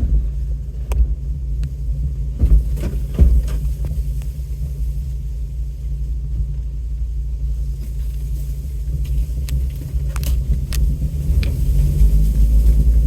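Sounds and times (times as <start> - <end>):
knocks and creaks: 0.0 - 4.4
vehicle rumbling on dirt road: 0.0 - 13.0.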